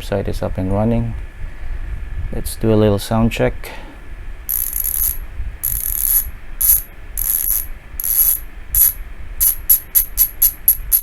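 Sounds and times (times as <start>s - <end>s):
bicycle hub ratcheting buzz: 4.5s - 11.0s.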